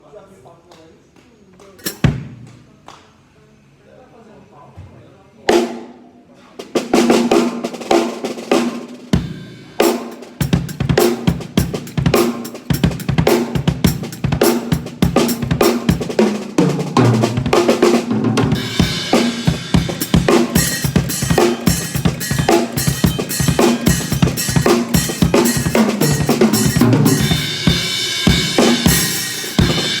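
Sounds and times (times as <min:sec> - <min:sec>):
snare hits: 0:01.7 - 0:02.6
drum kit groove: 0:01.8 - 0:02.5, 0:06.6 - 0:30.0
cymbal hits: 0:18.5 - 0:30.0.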